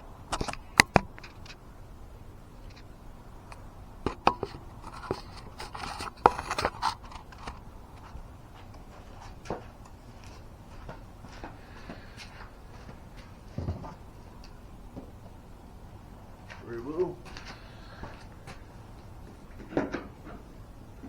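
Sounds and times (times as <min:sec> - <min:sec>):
scraping and rustling: 0:04.1 - 0:15.1.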